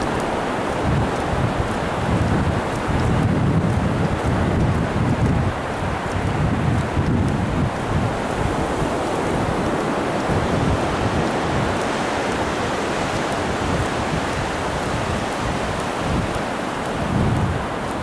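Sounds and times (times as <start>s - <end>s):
surf washing on beach: 0.0s - 18.0s
wind buffeting microphone: 0.0s - 18.0s.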